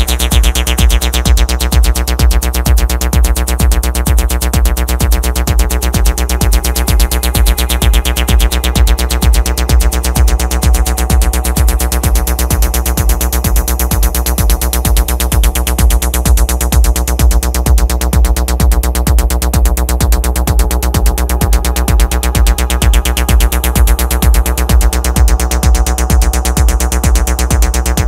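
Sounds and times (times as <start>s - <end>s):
drum machine kick: 0.0s - 28.0s
fast hi-hats: 0.0s - 28.0s
sustained synth layers: 4.7s - 13.2s, 19.6s - 25.4s.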